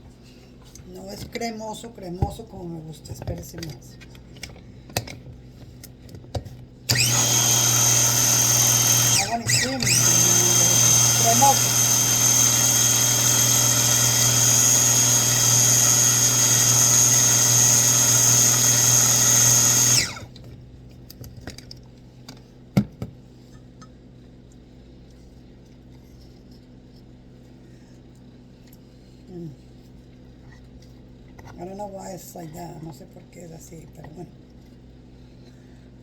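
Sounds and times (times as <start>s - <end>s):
appliance motor grinding nuts: 6.9s - 20.4s.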